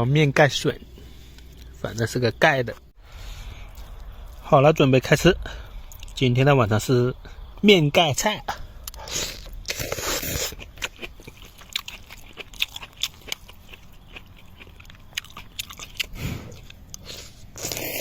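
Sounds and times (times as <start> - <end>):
person chewing and crunching: 8.8 - 18.0.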